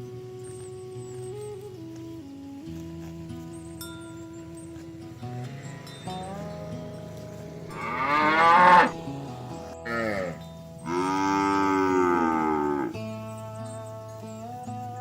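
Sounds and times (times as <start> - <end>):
background music: 0.0 - 15.0
cattle mooing: 5.4 - 13.0.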